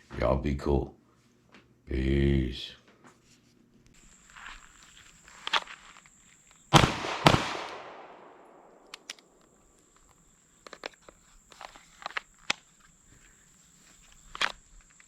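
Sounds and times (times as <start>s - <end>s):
pistol shots echoing: 6.7s - 9.1s.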